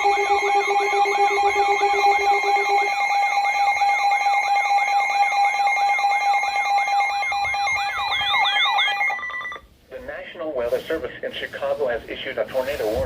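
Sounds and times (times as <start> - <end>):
high beeping tones: 0.0 - 9.6
pulsed lower beep: 0.0 - 9.6
siren-like sweeping tone: 0.0 - 9.6.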